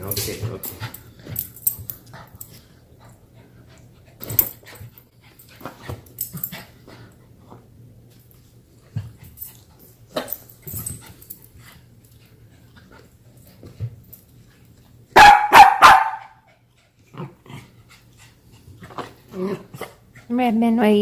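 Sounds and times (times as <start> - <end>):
puppy barking: 15.2 - 16.4.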